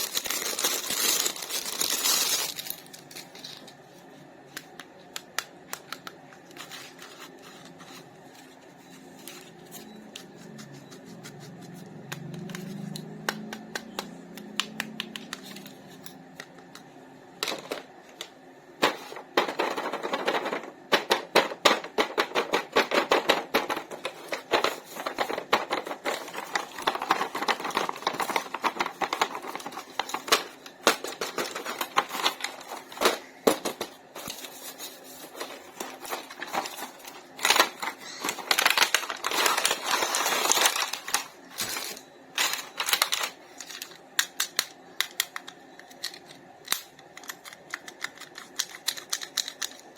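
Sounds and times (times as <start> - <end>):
hands handling plastic toys: 0.0 - 3.9, 18.8 - 49.9.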